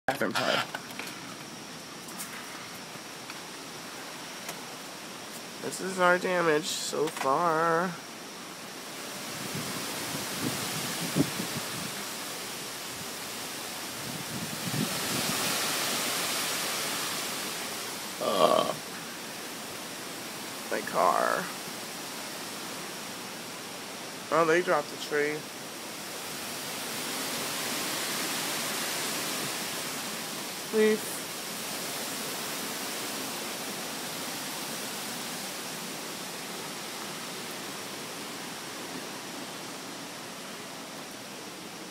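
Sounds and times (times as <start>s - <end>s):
rain: 0.1s - 41.9s
hurricane wind rushing: 0.2s - 41.9s
wind rushing: 9.0s - 12.2s, 13.8s - 17.5s.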